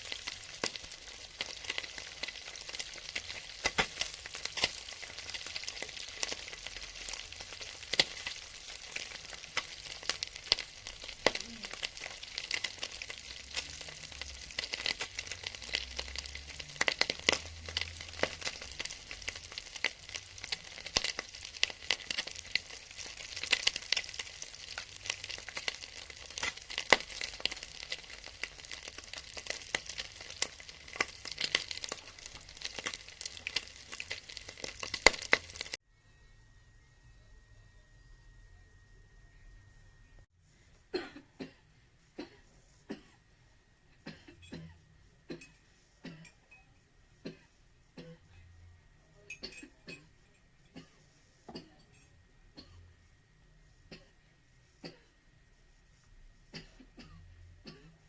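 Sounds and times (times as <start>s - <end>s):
fat sizzling in a pan: 0.0s - 35.8s.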